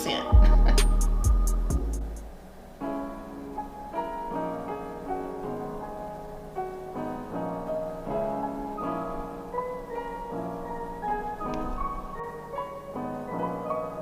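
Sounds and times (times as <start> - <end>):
background piano music: 0.0 - 14.0.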